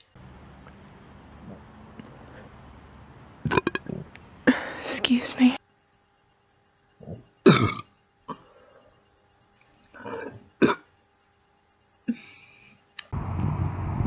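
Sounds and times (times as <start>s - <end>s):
steady background noise: 0.0s - 5.6s
woman burping: 3.4s - 5.0s.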